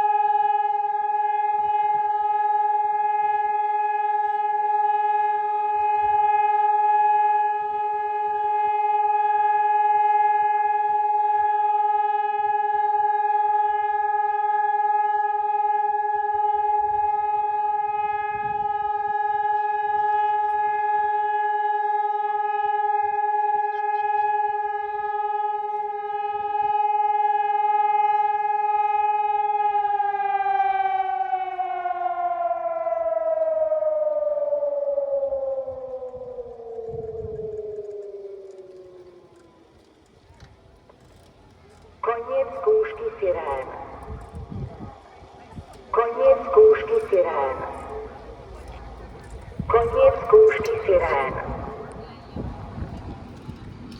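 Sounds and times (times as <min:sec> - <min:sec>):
electronic warning siren: 0:00.0 - 0:53.9.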